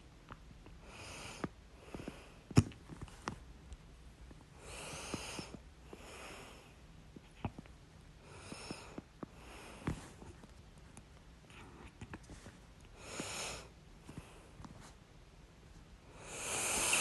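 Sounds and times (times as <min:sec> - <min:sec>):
noisy breaths: 0:00.8 - 0:03.4, 0:04.5 - 0:07.0, 0:08.2 - 0:10.4, 0:12.3 - 0:15.0, 0:16.0 - 0:17.0.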